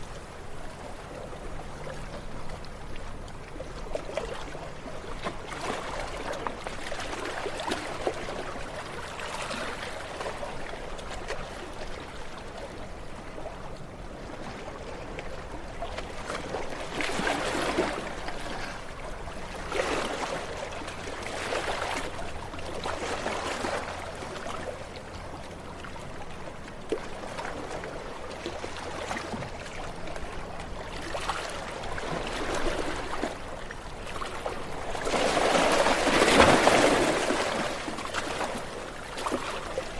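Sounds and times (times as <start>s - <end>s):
ocean waves washing onto shore: 26.2s - 39.9s.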